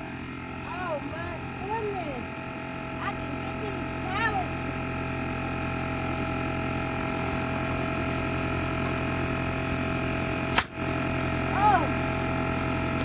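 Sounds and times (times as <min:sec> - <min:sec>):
air compressor running: 0:00.0 - 0:13.0
sharp snap: 0:10.5 - 0:11.0.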